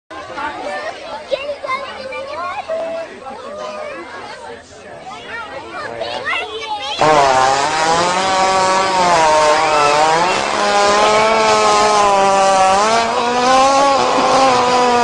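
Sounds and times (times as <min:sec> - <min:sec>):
animal farting: 0:07.0 - 0:15.0.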